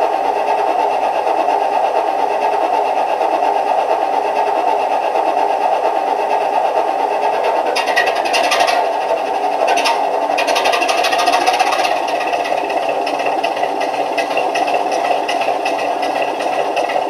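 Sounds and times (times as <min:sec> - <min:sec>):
diesel engine through small loudspeaker: 0:00.0 - 0:17.0
quick rhythmic clatter: 0:07.8 - 0:08.9, 0:09.6 - 0:17.0.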